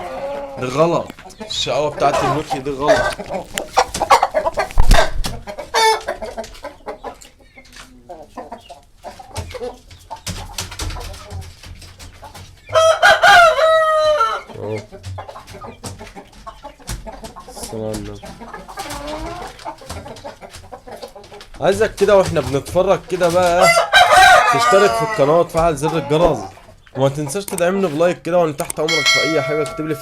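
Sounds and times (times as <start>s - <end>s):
hens clucking: 0.0s - 30.0s
rooster crowing: 12.7s - 14.5s, 23.6s - 25.3s.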